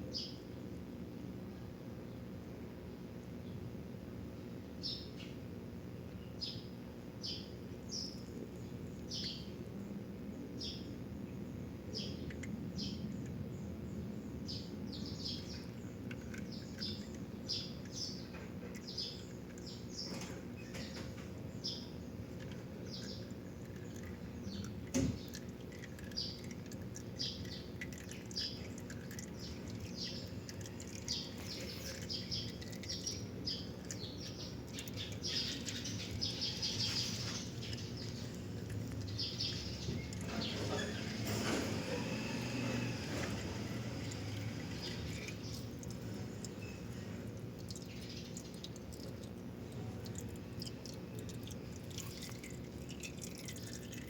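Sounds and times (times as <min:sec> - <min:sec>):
small birds chirping: 0:00.1 - 0:00.7, 0:04.8 - 0:05.4, 0:06.2 - 0:54.0
engine idling hum: 0:11.8 - 0:54.0.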